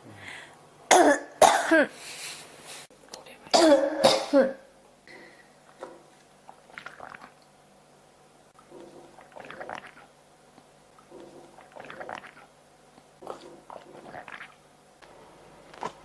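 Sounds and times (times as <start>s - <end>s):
person coughing: 0.9s - 2.0s, 3.5s - 5.4s.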